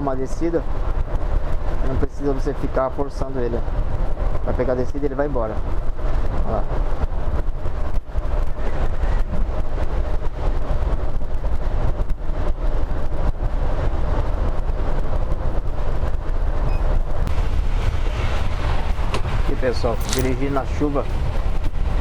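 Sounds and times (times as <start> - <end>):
engine and road rumble: 0.0 - 22.0
tyre hiss on wet asphalt: 17.3 - 22.0.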